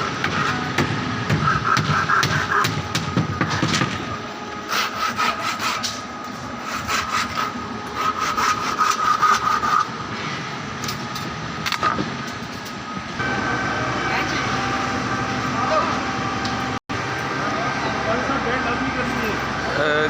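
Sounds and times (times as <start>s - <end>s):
high-pitched machine hum: 0.0s - 20.0s
rasping and scraping: 4.7s - 9.9s.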